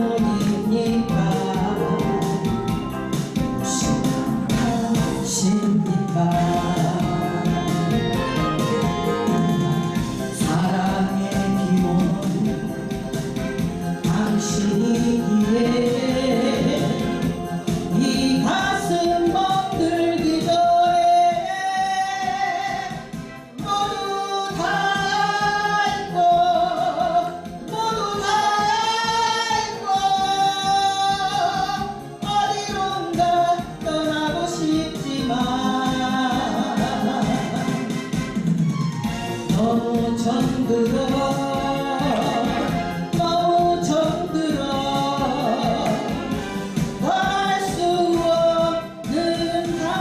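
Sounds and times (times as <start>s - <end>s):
amplified backing track with beat: 0.0s - 50.0s
person singing long sliding notes: 3.6s - 20.4s.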